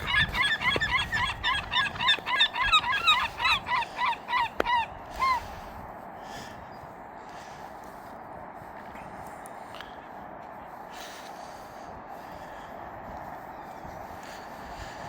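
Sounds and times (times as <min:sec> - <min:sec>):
geese honking: 0:00.0 - 0:05.5.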